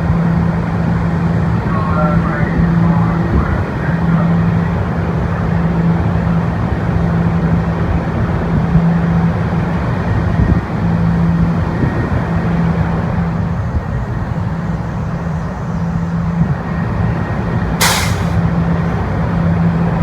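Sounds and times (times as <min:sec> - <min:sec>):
train wheels rumbling on track: 0:16.2 - 0:20.0.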